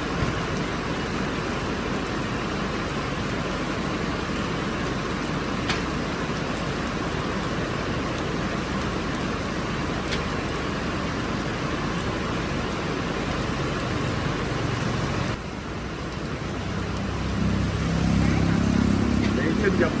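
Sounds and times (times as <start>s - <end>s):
heavy rain hissing: 0.0s - 20.0s.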